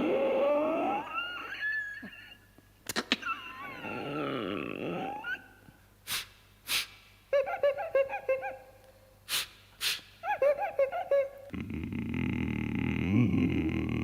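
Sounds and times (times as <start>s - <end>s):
man making breathy hisses: 6.0s - 7.1s, 9.2s - 10.2s.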